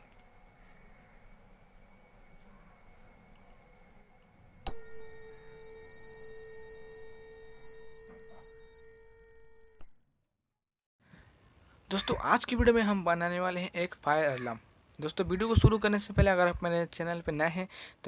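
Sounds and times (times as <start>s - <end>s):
high bell-like ringing tone: 4.7s - 10.3s.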